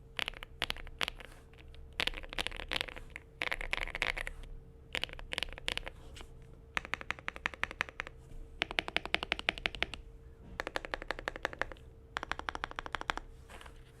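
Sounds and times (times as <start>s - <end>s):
mechanical keyboard typing: 0.2s - 1.3s, 2.0s - 4.3s, 4.9s - 5.9s, 6.8s - 10.0s, 10.6s - 13.7s.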